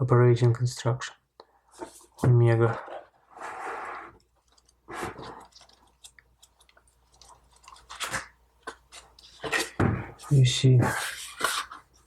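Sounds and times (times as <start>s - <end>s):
paper pages rustling: 4.2s - 12.0s.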